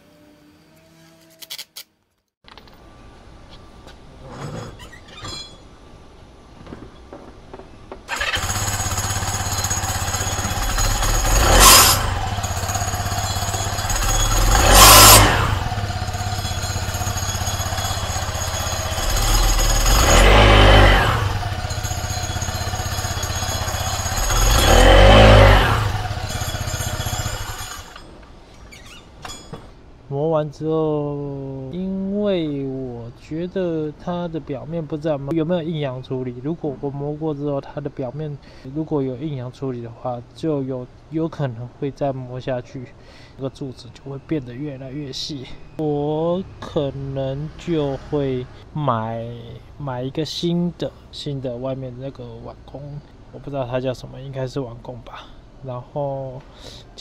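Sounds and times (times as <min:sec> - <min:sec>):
scooter engine idling and revving: 0:08.1 - 0:28.0, 0:46.6 - 0:48.7.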